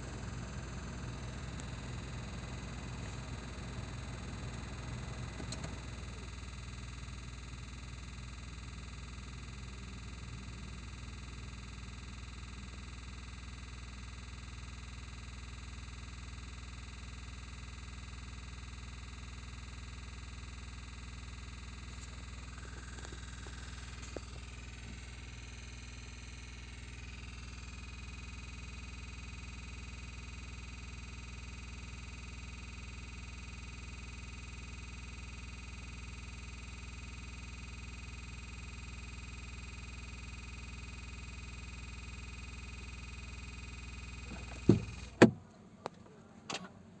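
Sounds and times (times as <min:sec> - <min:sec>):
car engine low hum: 0:00.0 - 0:07.9, 0:21.9 - 0:27.7, 0:44.0 - 0:45.5
loud knocks: 0:44.4 - 0:45.4.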